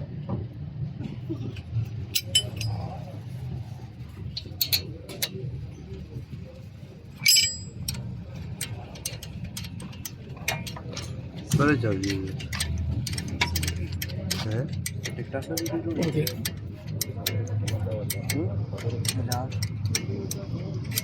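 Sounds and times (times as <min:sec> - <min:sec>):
low workshop hum: 0:00.0 - 0:21.0
metal tools clinking: 0:01.4 - 0:03.1, 0:04.3 - 0:05.4, 0:07.1 - 0:21.0.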